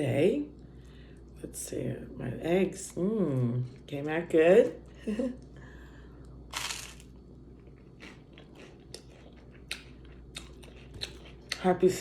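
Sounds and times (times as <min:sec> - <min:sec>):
person chewing: 0:06.3 - 0:11.6
crunchy bite: 0:06.5 - 0:07.1.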